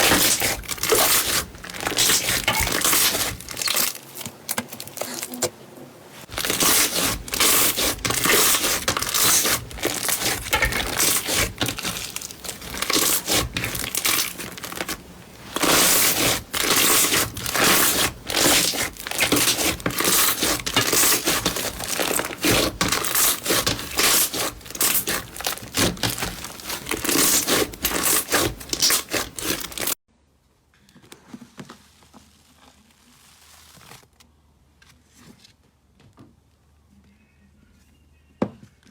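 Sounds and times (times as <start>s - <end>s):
slime crackling and popping: 0.0s - 5.5s, 6.3s - 30.0s.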